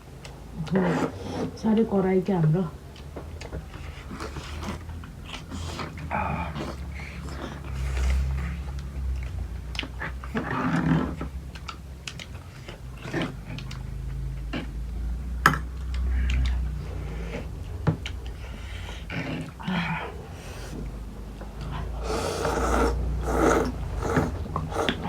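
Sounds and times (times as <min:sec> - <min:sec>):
noisy breaths or slurps: 0:03.7 - 0:09.2, 0:16.0 - 0:25.0.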